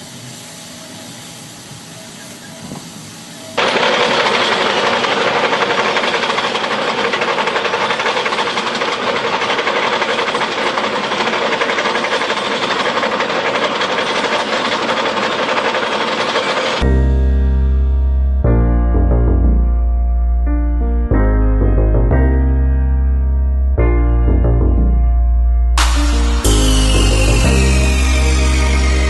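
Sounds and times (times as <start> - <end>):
machinery clattering: 3.6 - 17.0.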